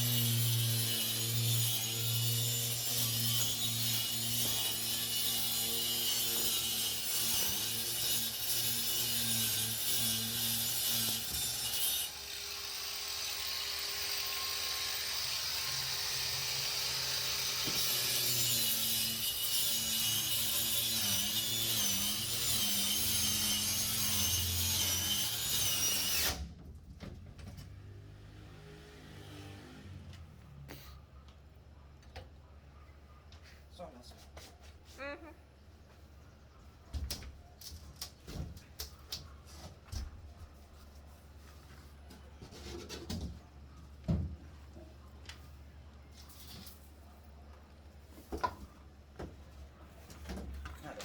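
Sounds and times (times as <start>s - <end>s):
power saw cutting plywood: 0.0s - 26.5s.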